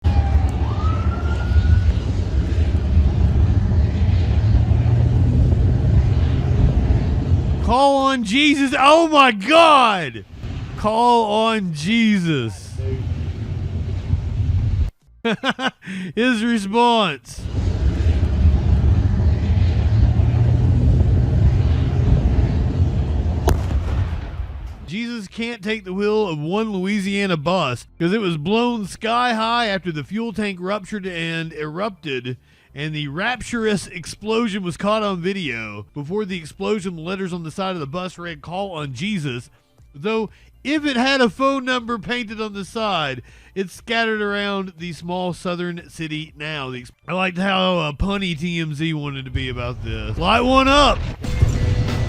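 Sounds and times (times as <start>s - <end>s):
loud low rumble: 0.0s - 8.8s, 10.2s - 14.9s, 17.3s - 24.9s
thin rising tone: 0.0s - 9.0s, 17.4s - 24.7s.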